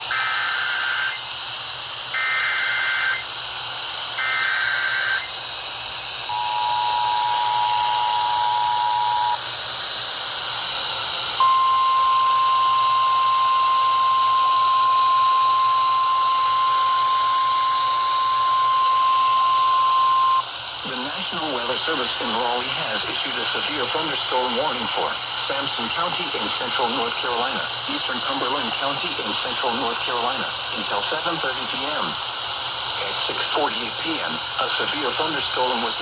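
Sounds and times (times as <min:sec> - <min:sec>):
steady warning tone: 0:00.0 - 0:01.3, 0:02.1 - 0:03.4, 0:04.2 - 0:05.4, 0:06.2 - 0:09.4, 0:11.4 - 0:36.0
screeching data bursts: 0:02.2 - 0:03.3, 0:04.2 - 0:05.4, 0:06.3 - 0:09.4, 0:11.5 - 0:36.0
two-tone attention signal: 0:06.3 - 0:09.4, 0:11.4 - 0:20.4
radio hiss: 0:16.1 - 0:36.0.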